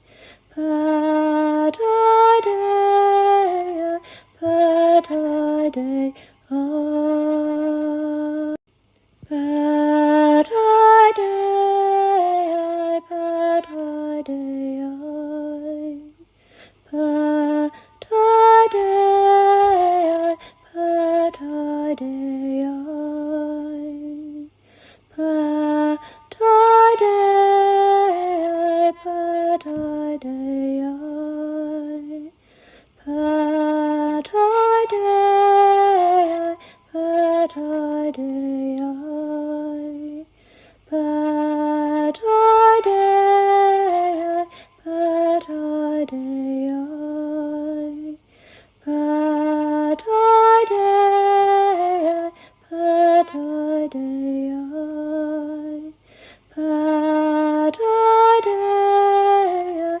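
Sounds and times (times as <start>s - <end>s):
woman singing unaccompanied: 0.0s - 60.0s.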